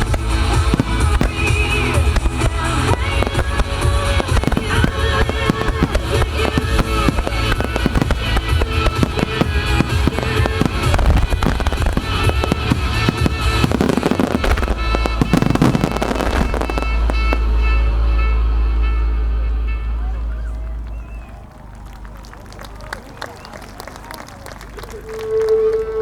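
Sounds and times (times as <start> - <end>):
fireworks bursting and crackling: 0.0 - 17.7
music from loudspeakers: 0.0 - 18.0.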